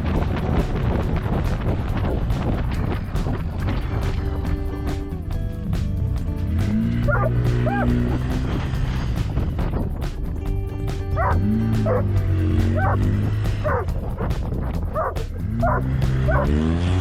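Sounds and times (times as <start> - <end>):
background music: 0.0 - 17.0
dog yipping: 7.1 - 8.0, 11.2 - 12.1, 12.8 - 14.3, 14.9 - 16.5.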